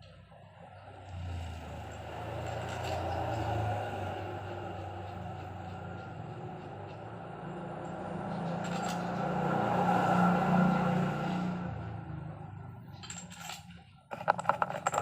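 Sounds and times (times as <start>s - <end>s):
metal bolts clinking: 8.4s - 9.2s, 12.9s - 15.0s.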